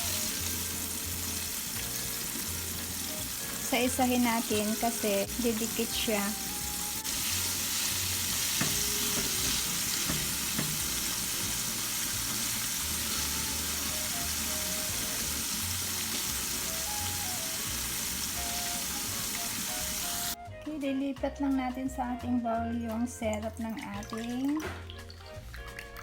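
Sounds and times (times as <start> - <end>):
chicken frying in hot oil: 0.0 - 20.4.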